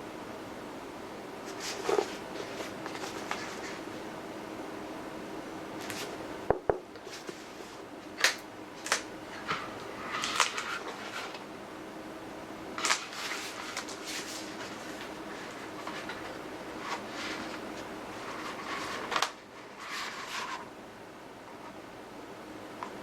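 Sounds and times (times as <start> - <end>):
steady low hum: 0.0 - 23.0
book pages rustling: 1.5 - 3.9, 5.8 - 6.2, 12.8 - 20.7.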